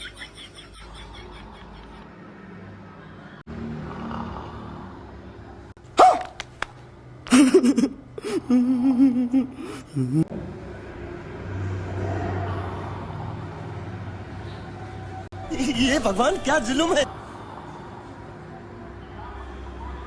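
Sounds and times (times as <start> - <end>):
person snoring: 3.6 - 5.3
sharp snort: 3.8 - 5.1.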